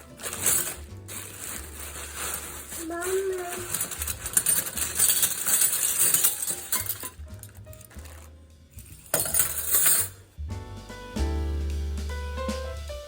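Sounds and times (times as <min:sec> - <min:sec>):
cutlery clinking: 0:00.0 - 0:10.2
background music: 0:00.0 - 0:13.0.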